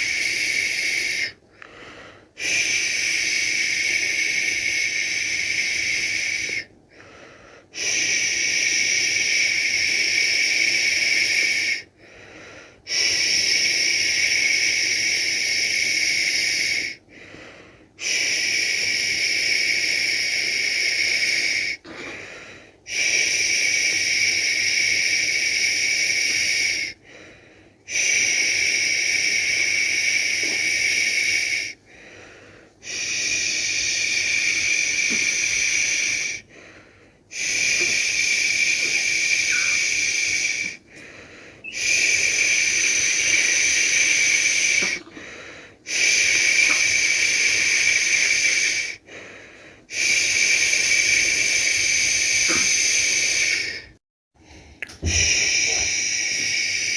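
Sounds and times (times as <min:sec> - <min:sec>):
person shushing: 0:37.4 - 0:40.7, 0:50.7 - 0:53.9, 0:54.8 - 0:56.9.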